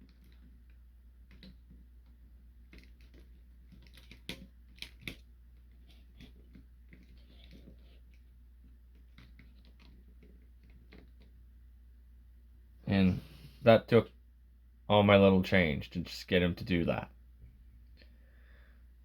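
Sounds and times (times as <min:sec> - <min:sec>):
faint low hum: 0:00.0 - 0:19.0
plastic toy parts clicking: 0:02.7 - 0:05.2.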